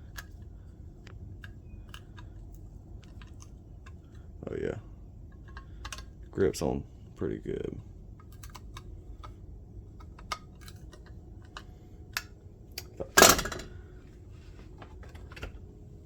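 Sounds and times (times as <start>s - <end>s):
loud clattering rattle: 13.2s - 13.8s.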